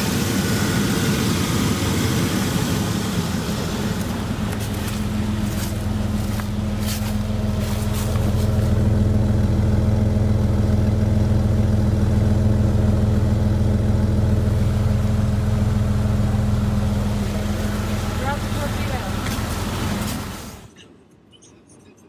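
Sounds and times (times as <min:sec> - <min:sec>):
car engine running: 0:00.0 - 0:20.7.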